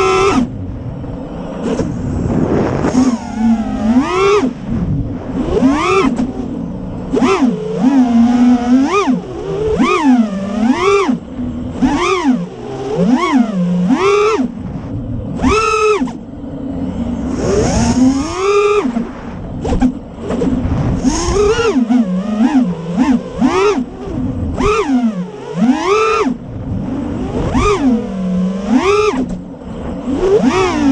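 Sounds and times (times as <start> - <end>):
wind rumbling on microphone: 0.0 - 7.2, 14.5 - 22.0, 26.4 - 27.8
drone motors whining: 0.0 - 30.9.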